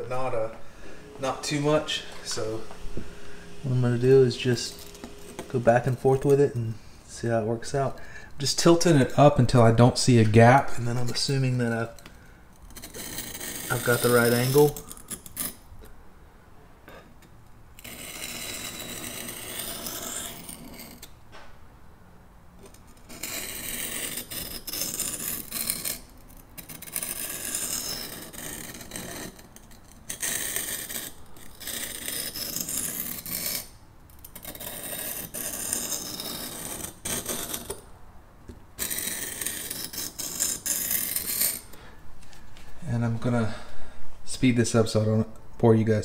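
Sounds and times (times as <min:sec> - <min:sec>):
knife scraping on whetstone: 0:01.2 - 0:06.8, 0:12.6 - 0:15.6, 0:17.8 - 0:21.1, 0:22.9 - 0:37.8, 0:38.8 - 0:41.8.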